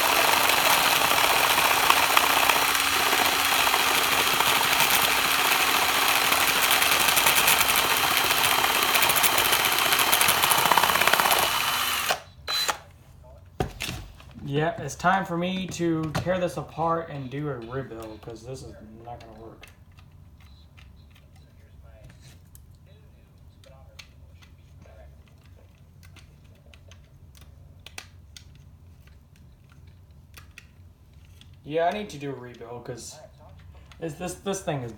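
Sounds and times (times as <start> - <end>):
drill motor whine: 0.0 - 12.9.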